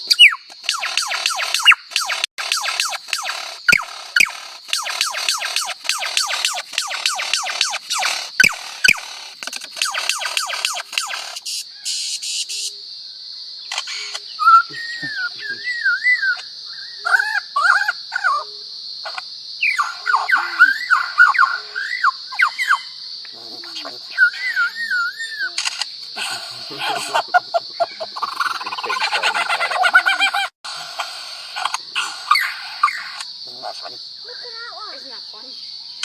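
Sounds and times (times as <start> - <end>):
steady high hiss: 11.2 - 12.8, 25.8 - 35.5.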